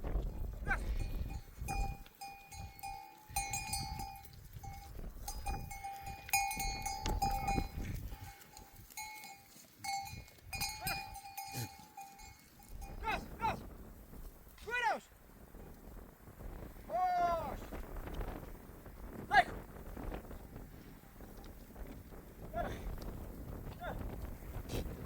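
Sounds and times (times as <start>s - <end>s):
sheep bells clanking: 0.2s - 13.4s.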